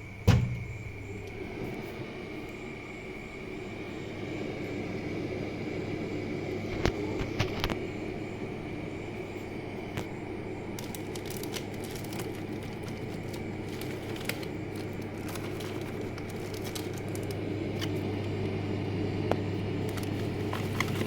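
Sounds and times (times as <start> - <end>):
refrigerator humming: 0.0 - 21.0
clicks and crackles: 6.7 - 7.8, 9.9 - 18.6, 19.2 - 21.0.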